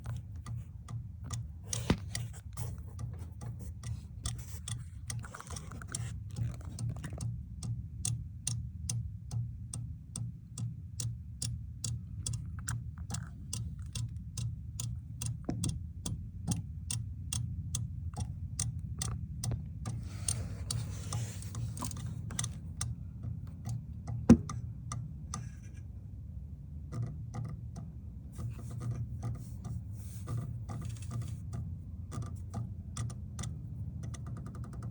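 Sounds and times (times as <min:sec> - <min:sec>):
steady low hum: 0:00.0 - 0:34.9
rapid clicking from engine compartment: 0:19.0 - 0:24.6, 0:28.4 - 0:34.9.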